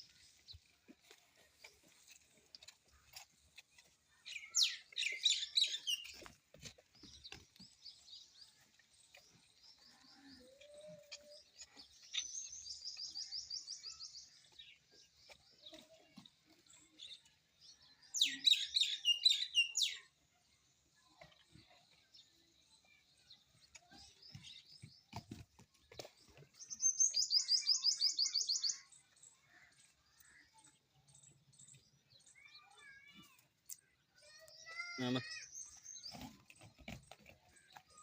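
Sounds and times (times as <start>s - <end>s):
small birds chirping: 0.0s - 38.0s
bird song burst: 26.6s - 29.0s.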